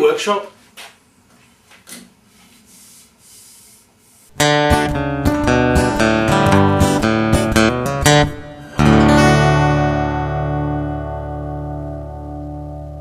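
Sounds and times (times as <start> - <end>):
acoustic guitar music: 4.4 - 13.0.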